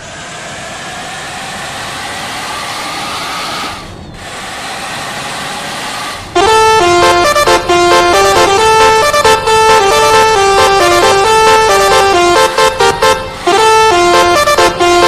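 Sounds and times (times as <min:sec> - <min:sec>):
road noise of passing vehicle: 0:00.0 - 0:10.3
musical bus horn melody: 0:06.2 - 0:15.0.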